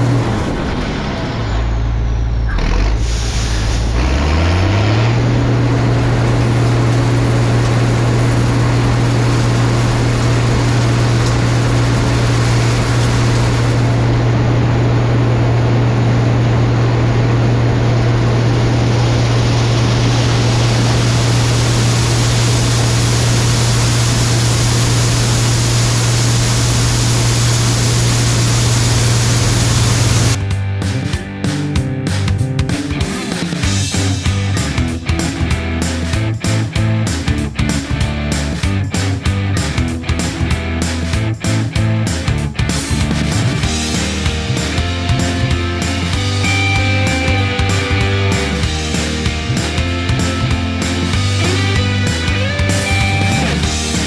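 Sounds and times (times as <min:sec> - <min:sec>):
hiss: 0:03.0 - 0:04.0, 0:19.0 - 0:30.4
farm machine engine running: 0:03.8 - 0:30.6, 0:42.1 - 0:54.0.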